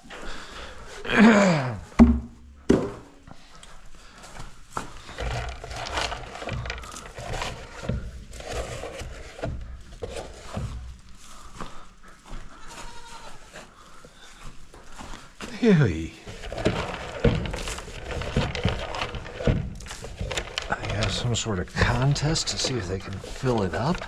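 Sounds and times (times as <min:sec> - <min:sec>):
shuffling and knocking: 0:04.8 - 0:12.3, 0:14.3 - 0:24.0
goats bleating: 0:12.5 - 0:13.5.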